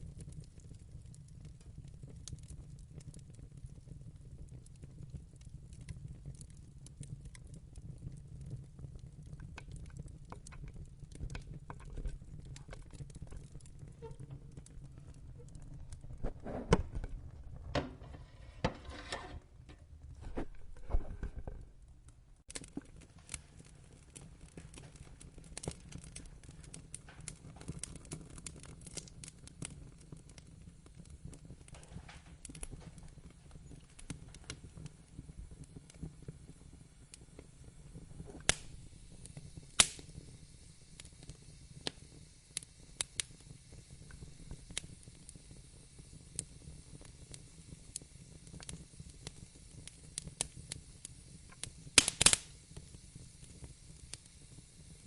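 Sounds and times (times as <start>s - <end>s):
fire crackling and popping: 0.0s - 55.0s
fire rumbling: 0.0s - 55.0s.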